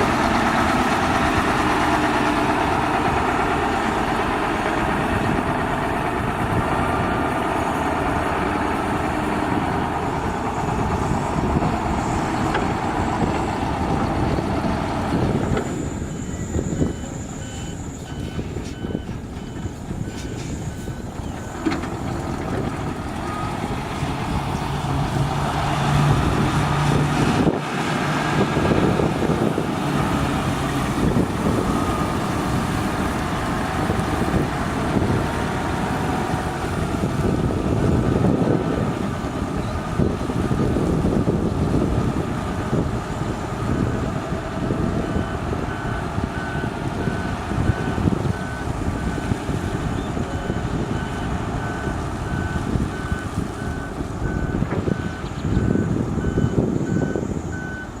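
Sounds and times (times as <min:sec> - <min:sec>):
reversing alarm beeping: 0:00.0 - 0:27.5, 0:28.2 - 0:41.4, 0:42.7 - 0:58.0
diesel construction machinery running: 0:00.0 - 0:58.0.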